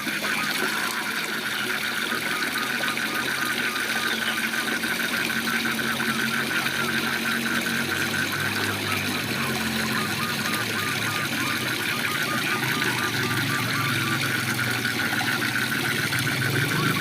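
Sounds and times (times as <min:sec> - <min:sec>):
frog calling: 0:00.0 - 0:17.0
low steady drone: 0:00.0 - 0:17.0
waterfall rushing: 0:07.2 - 0:17.0.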